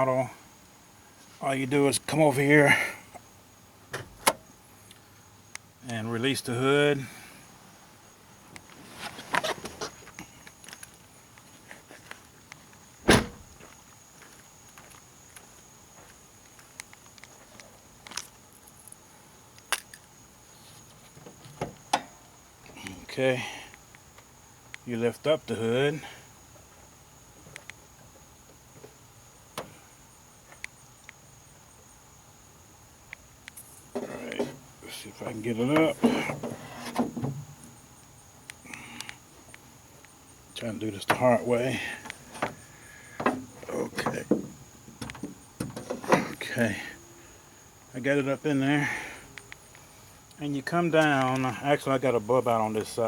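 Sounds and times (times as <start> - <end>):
heavy thunk from car body: 13.0 - 13.5, 35.8 - 37.5, 43.2 - 46.4
light clicks and knocks: 42.0 - 46.4.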